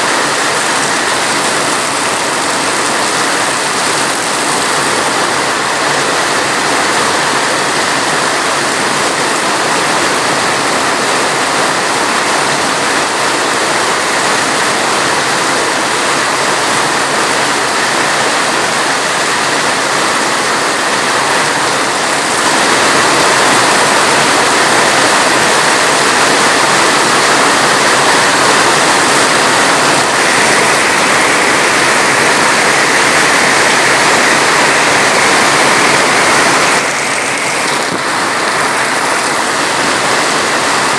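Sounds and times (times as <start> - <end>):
dense rainfall hiss: 0.0 - 40.9.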